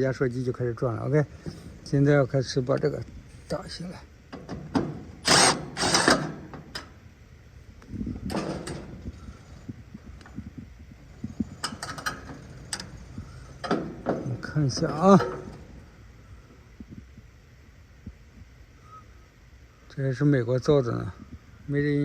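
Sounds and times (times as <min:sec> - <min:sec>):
metal scraping and rattling: 0:01.1 - 0:07.0, 0:07.8 - 0:16.1.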